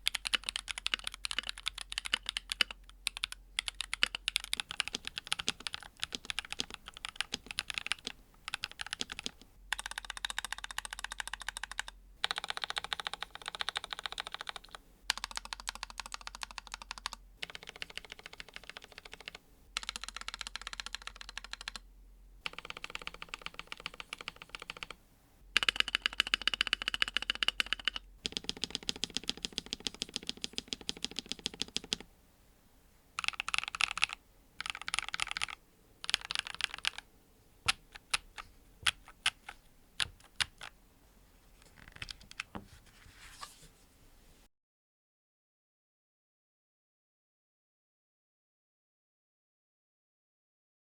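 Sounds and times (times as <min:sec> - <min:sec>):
mechanical keyboard typing: 0:00.0 - 0:21.8, 0:22.4 - 0:25.0, 0:25.6 - 0:32.1, 0:33.2 - 0:37.1, 0:37.7 - 0:40.8, 0:41.7 - 0:42.6.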